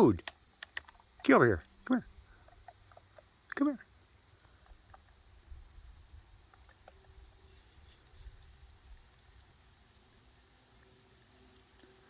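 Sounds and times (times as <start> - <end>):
insects chirping: 0.0 - 12.0
tiny clicks: 0.2 - 1.3.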